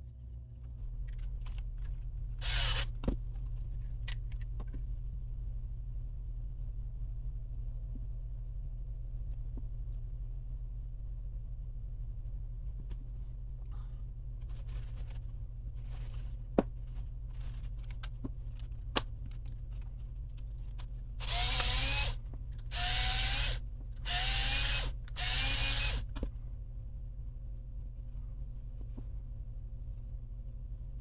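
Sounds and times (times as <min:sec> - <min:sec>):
power driver motor whine: 0:21.2 - 0:26.1.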